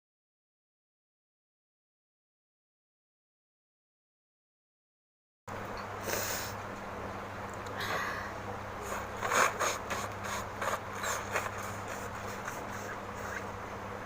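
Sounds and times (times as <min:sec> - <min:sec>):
steady low hum: 0:05.5 - 0:14.0
person blowing nose: 0:08.8 - 0:13.4.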